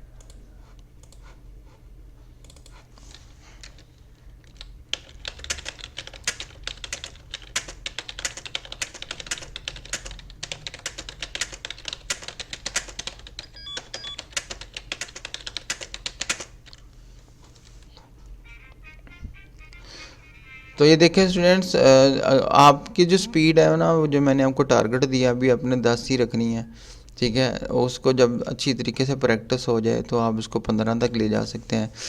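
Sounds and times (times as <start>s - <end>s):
low steady hum: 0.0s - 32.0s
fast typing on keyboard: 3.6s - 3.8s, 4.4s - 16.8s.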